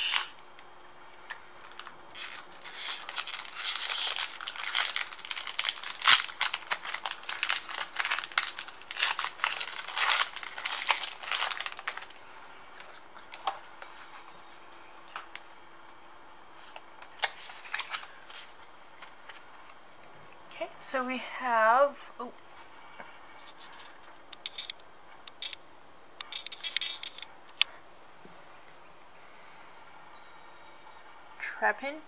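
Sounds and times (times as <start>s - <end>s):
foil wrapper tearing and crinkling: 0.0s - 0.4s, 1.6s - 12.2s, 17.2s - 18.6s.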